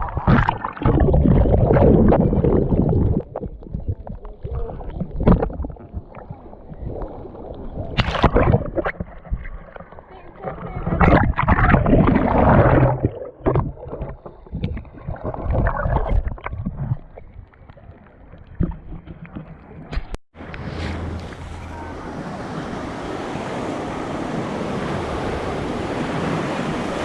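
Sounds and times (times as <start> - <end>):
water splashing: 0.0 - 27.0
ocean surf: 20.4 - 27.0.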